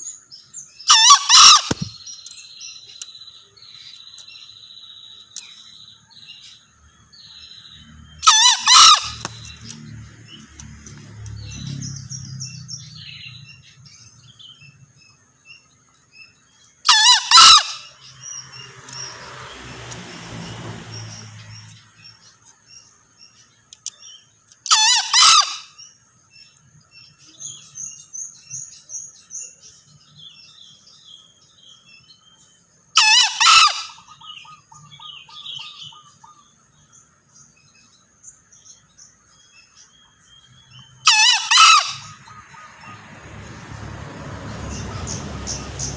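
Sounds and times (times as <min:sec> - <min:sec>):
small birds chirping: 0:00.0 - 0:43.6, 0:44.5 - 0:45.9
junglefowl crowing: 0:00.9 - 0:02.0, 0:08.2 - 0:09.8, 0:16.9 - 0:18.0, 0:24.7 - 0:25.8, 0:33.0 - 0:36.5, 0:41.0 - 0:43.0.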